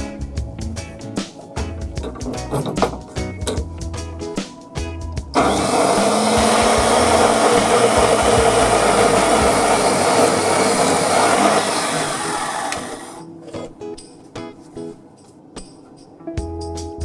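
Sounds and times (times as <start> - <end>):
electric woodworking machine running: 5.4 - 13.2.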